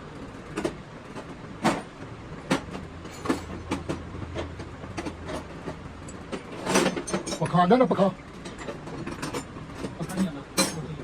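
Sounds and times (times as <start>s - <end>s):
hand tools knocking on engine parts: 0.6s - 7.6s.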